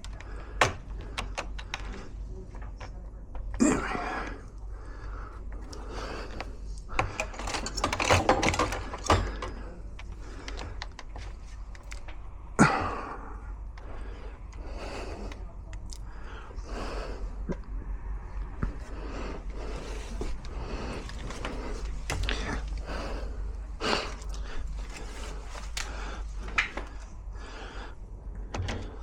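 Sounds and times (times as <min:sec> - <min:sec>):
metal lock parts clicking and rattling: 0:00.0 - 0:03.6, 0:05.4 - 0:12.2, 0:28.3 - 0:29.0.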